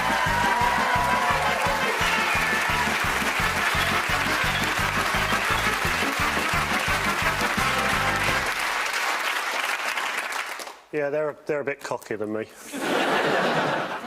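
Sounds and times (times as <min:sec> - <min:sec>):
audience applause: 0:00.0 - 0:10.8.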